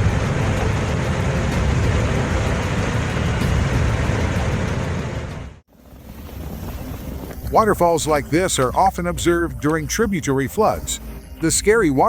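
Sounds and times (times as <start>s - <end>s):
floodwater rushing: 0.0s - 8.5s.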